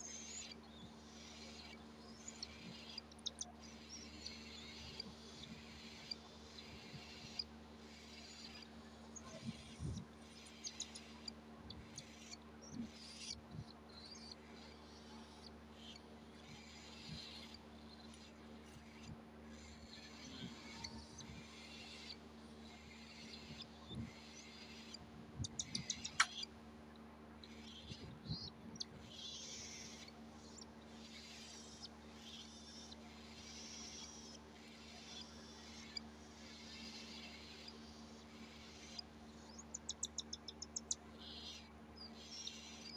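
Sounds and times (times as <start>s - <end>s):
small clicks: 25.5s - 26.5s.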